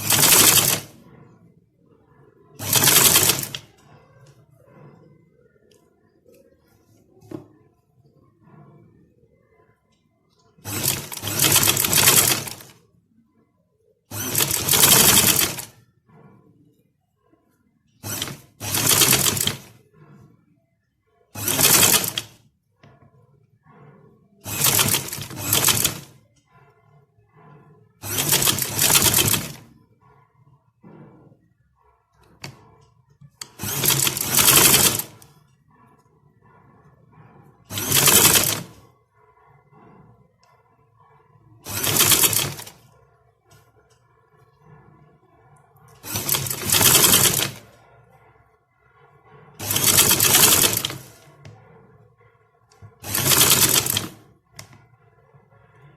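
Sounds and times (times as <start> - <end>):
electric sewing machine stitching: 0.0 - 1.0, 2.6 - 3.8, 10.6 - 12.8, 14.1 - 15.7, 18.0 - 19.8, 21.4 - 22.4, 24.4 - 26.2, 28.0 - 29.7, 33.4 - 35.2, 37.7 - 38.8, 41.6 - 42.8, 46.0 - 47.8, 49.6 - 51.2, 53.0 - 54.3.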